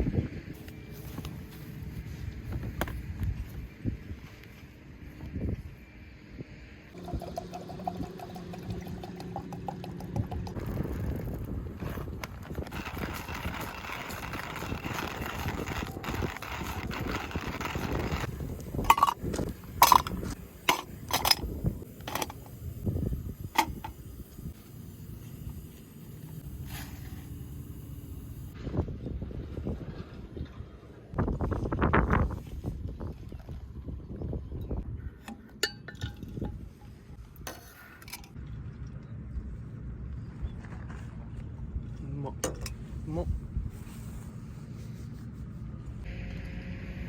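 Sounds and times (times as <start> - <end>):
wind rumble on microphone: 0.0 - 24.6, 28.5 - 35.3, 35.9 - 37.5, 38.4 - 46.1.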